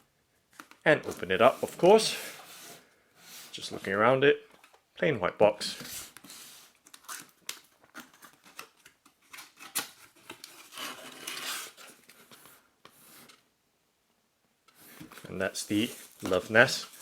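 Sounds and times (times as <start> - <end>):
cardboard rustling: 7.9 - 13.4, 14.8 - 17.0.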